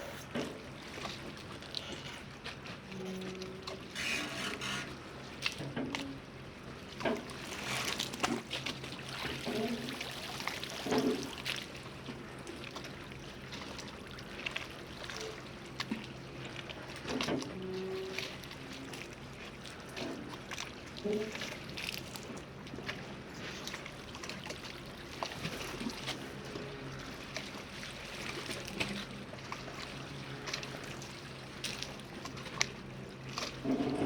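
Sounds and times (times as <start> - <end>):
water lapping against boats: 0.0 - 34.0
short low squeaks: 3.8 - 5.0.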